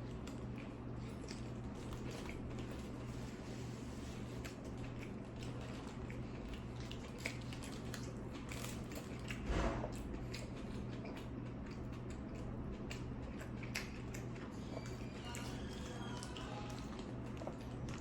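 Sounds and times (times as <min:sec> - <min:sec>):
person chewing: 0:00.0 - 0:18.0.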